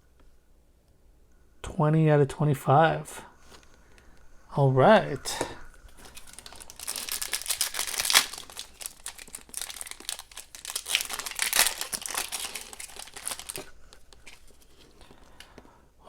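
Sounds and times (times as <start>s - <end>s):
foil wrapper tearing and crinkling: 6.0s - 15.1s.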